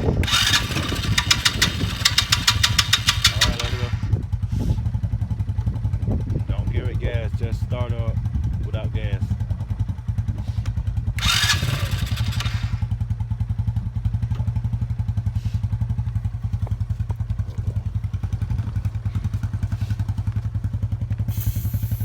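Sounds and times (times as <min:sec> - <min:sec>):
small engine cranking: 0:00.0 - 0:04.1, 0:11.2 - 0:13.0, 0:16.2 - 0:20.7, 0:21.3 - 0:22.0
short loud hiss: 0:21.3 - 0:22.0.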